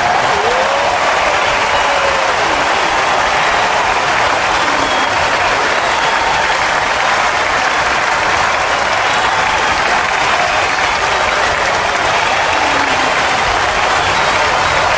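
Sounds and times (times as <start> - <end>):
voices calling out: 0.0 - 6.9, 9.9 - 14.9
crowd clapping: 0.0 - 14.9.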